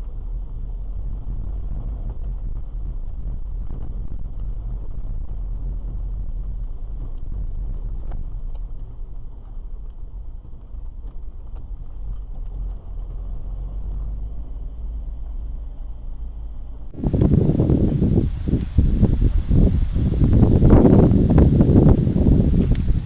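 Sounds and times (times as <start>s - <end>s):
engine and tyre rumble: 17.0s - 23.0s.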